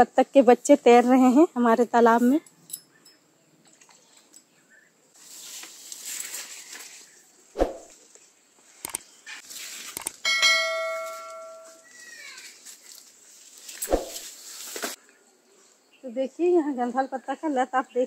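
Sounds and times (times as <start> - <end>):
clicks: 8.8 - 9.0, 9.9 - 10.2
bell-like ringing tone: 10.2 - 11.9.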